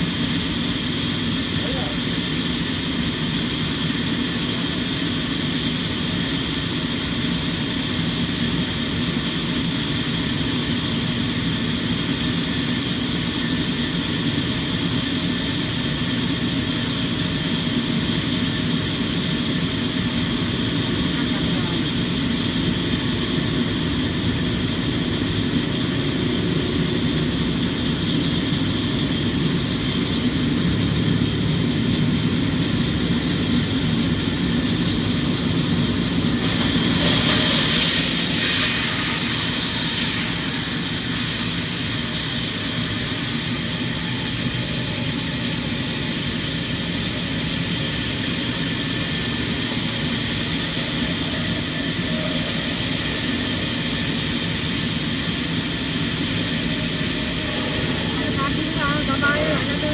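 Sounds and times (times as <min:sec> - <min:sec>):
sawmill machinery running: 0:00.0 - 0:59.9
saw cutting through log: 0:17.4 - 0:59.9.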